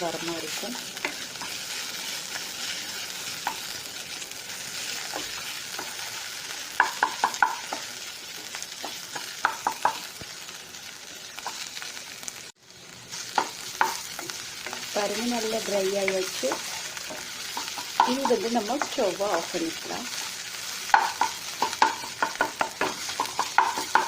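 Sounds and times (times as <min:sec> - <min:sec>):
vegetables sizzling in a pan: 0:00.0 - 0:24.0
spatula tapping against pan: 0:06.8 - 0:07.8, 0:08.8 - 0:10.1, 0:20.9 - 0:24.0.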